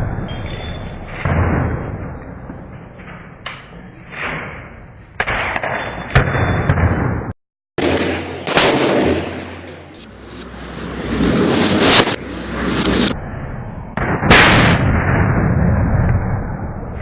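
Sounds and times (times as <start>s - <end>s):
rifle shots echoing: 7.8s - 10.0s.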